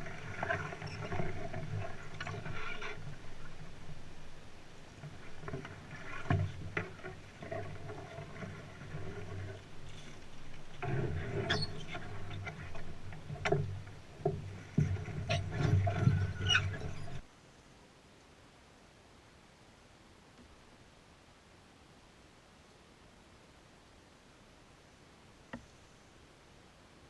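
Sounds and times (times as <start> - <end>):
paddling in water: 0.0 - 17.3.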